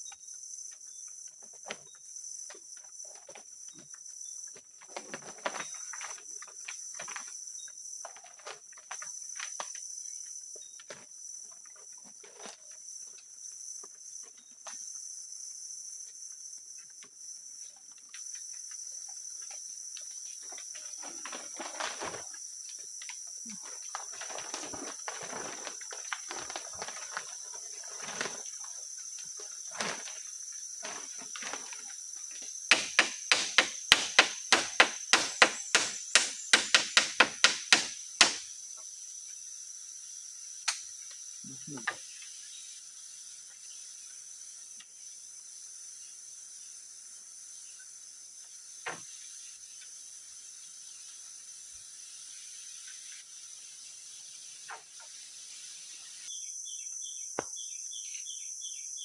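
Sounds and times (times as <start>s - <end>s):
night insects chirring: 0.0s - 59.0s
sharp knocks: 32.7s - 38.5s.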